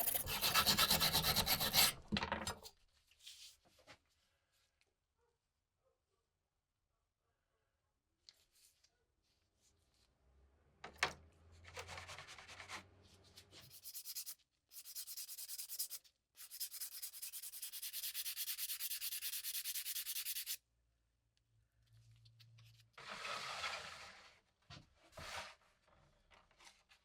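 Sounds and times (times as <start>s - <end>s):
sanding in quick strokes: 0.0s - 1.9s, 13.6s - 20.6s.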